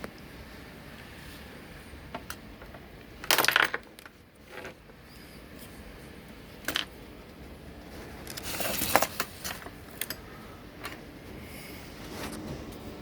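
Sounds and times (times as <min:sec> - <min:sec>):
objects clicking and knocking: 0:02.1 - 0:04.8, 0:06.6 - 0:07.0
rustling scrape: 0:07.8 - 0:09.6, 0:11.3 - 0:13.0.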